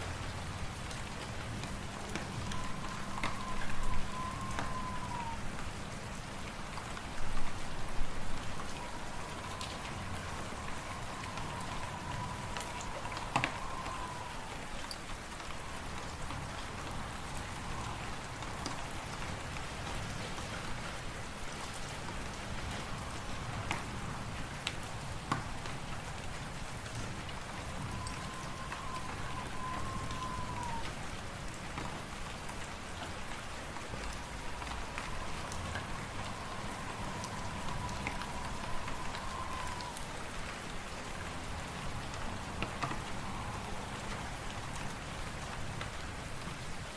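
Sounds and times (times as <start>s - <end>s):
faint wavering whistle: 2.2s - 5.4s, 8.8s - 14.6s, 27.6s - 30.9s, 34.2s - 40.4s
storm wind rushing: 8.4s - 14.7s, 34.0s - 40.4s.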